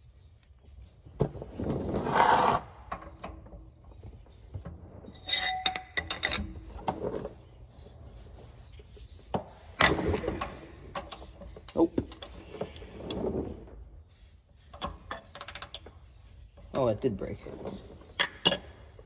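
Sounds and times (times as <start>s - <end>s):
rough scraping rub: 1.3s - 2.9s, 6.3s - 14.0s
metallic ring: 5.1s - 6.8s.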